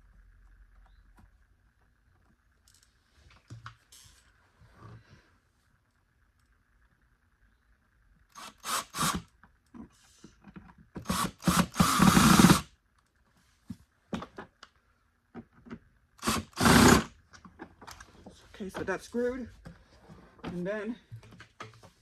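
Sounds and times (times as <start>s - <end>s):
screw driven into plastic: 11.0s - 12.6s, 16.2s - 17.1s.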